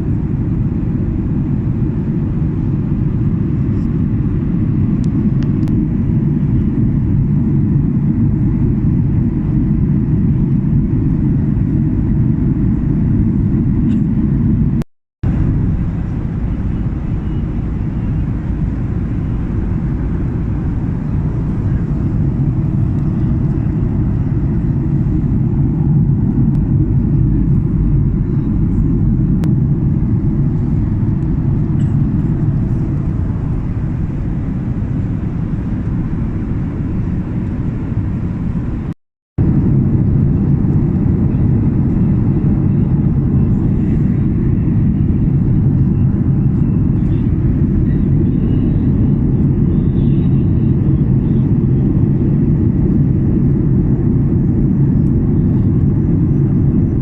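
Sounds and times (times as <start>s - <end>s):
airliner engine low rumble: 0.0s - 57.0s.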